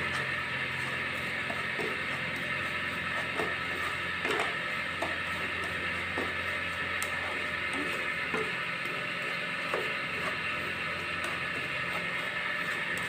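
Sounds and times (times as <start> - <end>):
spoon scraping a pan: 0.0 - 13.0.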